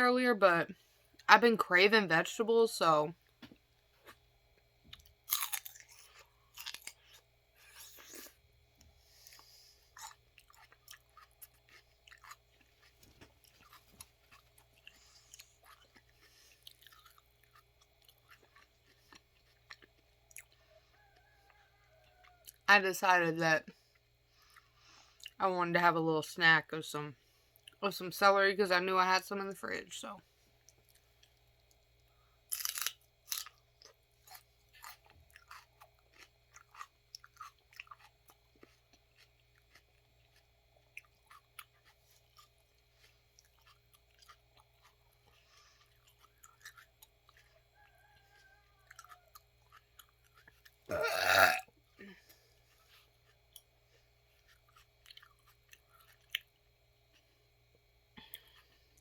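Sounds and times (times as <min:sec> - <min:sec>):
celery crunching while chewed: 0:04.9 - 0:20.9, 0:30.6 - 0:57.4.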